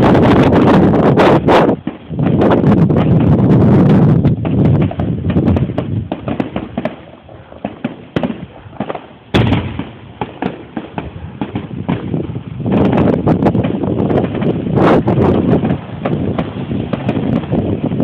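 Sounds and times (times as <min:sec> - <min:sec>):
fireworks crackling and banging: 0:00.0 - 0:18.0.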